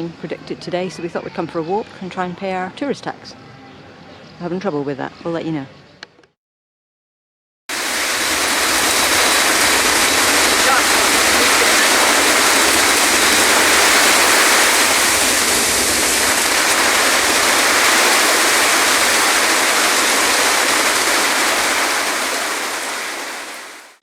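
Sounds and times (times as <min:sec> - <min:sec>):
water rushing: 0:07.7 - 0:24.0.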